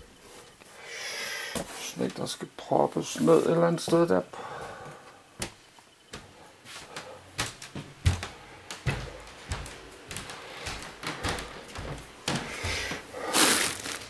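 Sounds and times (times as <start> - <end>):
rustling: 10.7 - 14.0.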